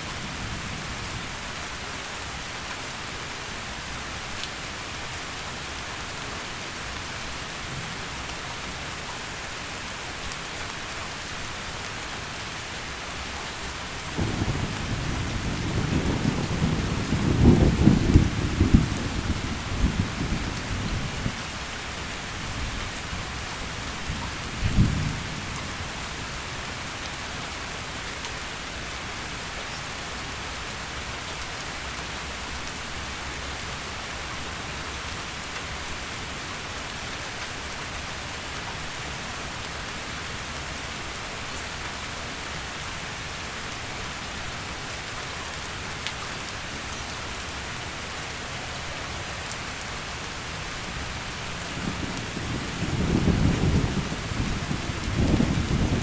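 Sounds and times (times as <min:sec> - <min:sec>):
heavy rain: 0:00.0 - 0:56.0
thunder rolling: 0:14.2 - 0:20.8.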